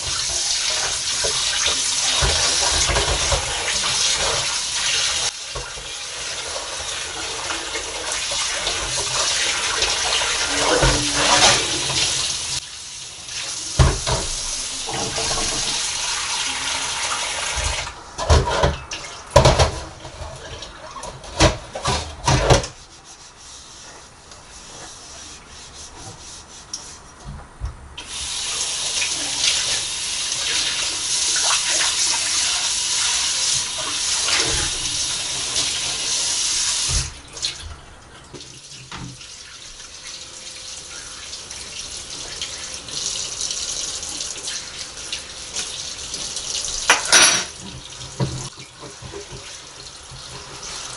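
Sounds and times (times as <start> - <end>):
tap running into sink: 0.0 - 4.6, 13.8 - 15.9
dishes and utensils clattering: 0.1 - 4.5, 10.5 - 12.1, 13.8 - 15.8, 18.2 - 22.8, 46.7 - 49.5.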